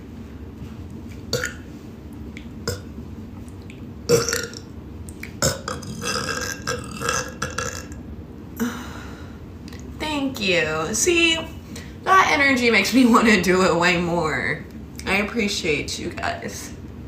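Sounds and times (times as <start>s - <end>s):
woman burping: 1.3s - 1.6s, 2.6s - 2.9s, 4.1s - 4.6s, 5.4s - 8.0s.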